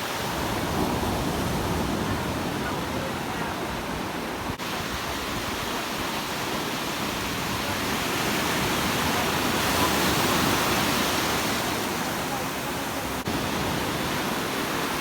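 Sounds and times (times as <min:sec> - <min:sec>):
ocean surf breaking: 0:00.0 - 0:15.0.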